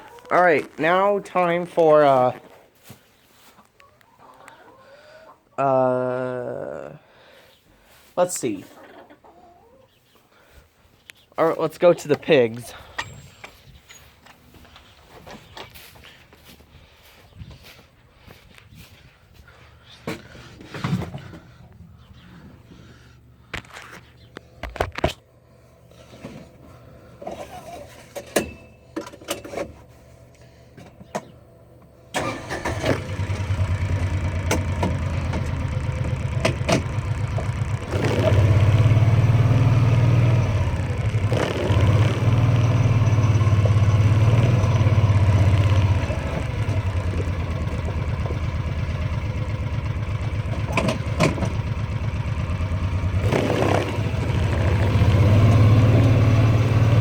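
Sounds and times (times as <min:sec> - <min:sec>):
vehicle engine running: 0:32.4 - 0:57.0.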